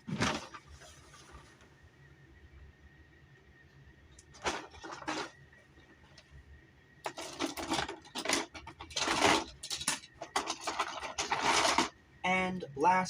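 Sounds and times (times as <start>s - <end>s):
plastic figures clattering and rustling: 0.0s - 1.4s, 4.2s - 6.2s, 7.0s - 12.0s
plastic figures clacking: 7.0s - 11.9s.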